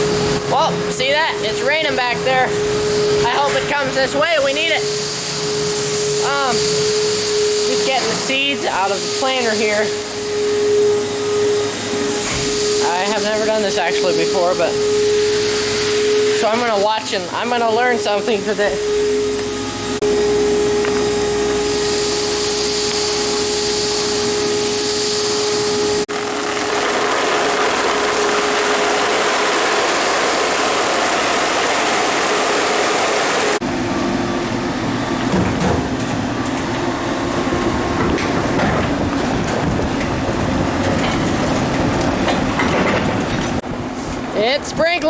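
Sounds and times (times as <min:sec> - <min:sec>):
motor whine: 0:00.0 - 0:35.4.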